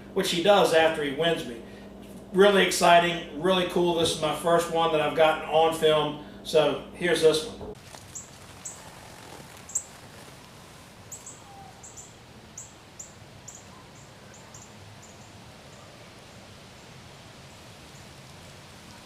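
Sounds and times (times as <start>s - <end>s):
faint outdoor hiss: 0.0s - 19.0s
small bird chirping: 7.9s - 10.4s, 11.1s - 16.0s.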